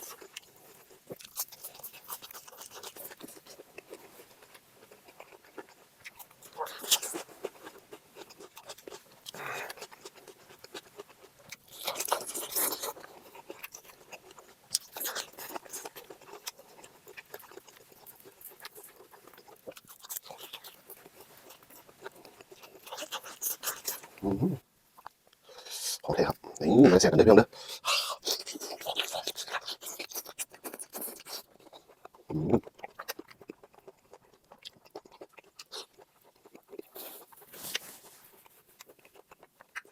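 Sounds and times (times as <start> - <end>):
person chewing and crunching food: 0.0 - 39.9.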